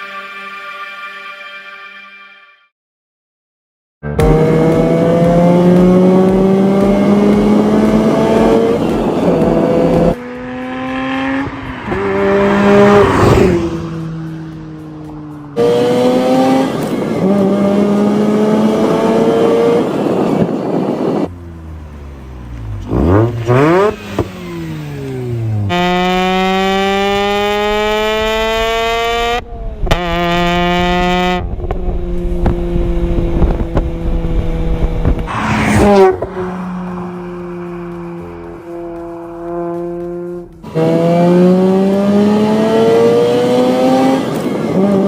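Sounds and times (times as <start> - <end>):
rotary engine revving: 4.2 - 20.3, 21.0 - 29.4, 34.8 - 45.0.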